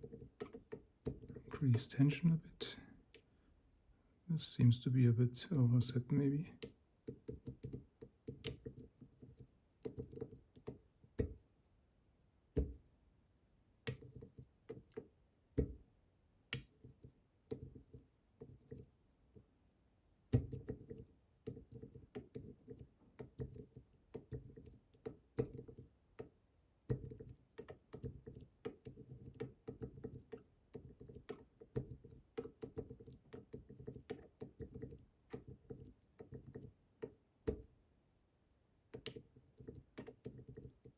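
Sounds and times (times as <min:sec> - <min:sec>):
lock pick clicking on pins: 0:26.9 - 0:37.6, 0:38.9 - 0:40.9.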